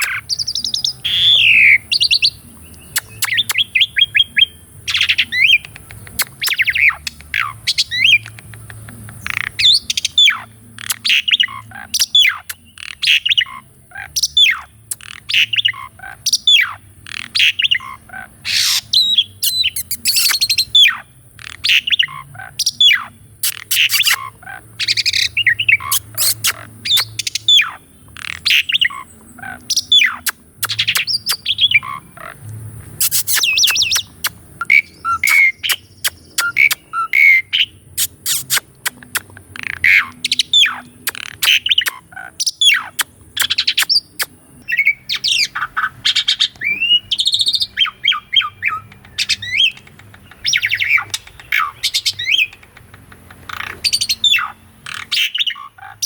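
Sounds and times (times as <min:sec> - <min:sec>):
starling singing: 0:00.0 - 0:32.3, 0:32.9 - 0:52.6.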